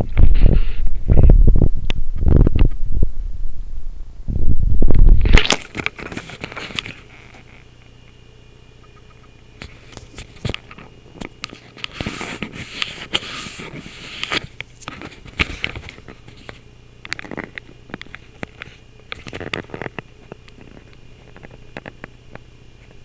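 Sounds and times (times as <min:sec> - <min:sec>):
low electrical hum: 0:00.0 - 0:23.0
sharp clicks and crackles: 0:14.2 - 0:23.0.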